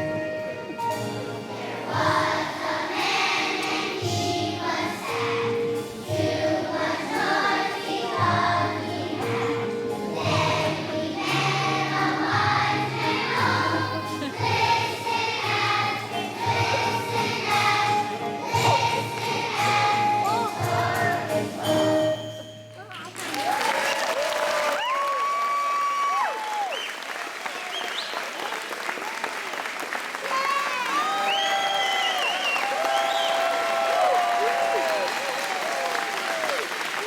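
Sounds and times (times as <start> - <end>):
instrumental accompaniment: 0.0 - 22.9
children's choir singing: 0.8 - 22.2.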